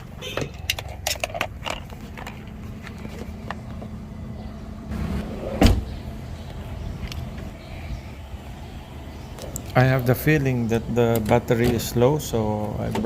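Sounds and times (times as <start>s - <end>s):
steady low hum: 1.2s - 11.4s.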